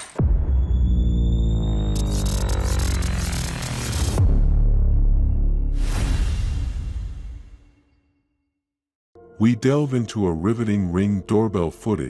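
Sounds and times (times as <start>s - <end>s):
stuttering glitch: 2.0s - 4.2s.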